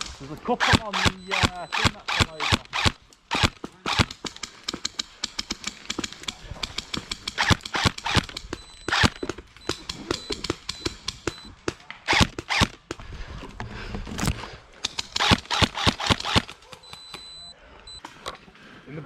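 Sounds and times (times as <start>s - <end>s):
airsoft guns firing: 0.0s - 13.0s, 14.8s - 16.8s.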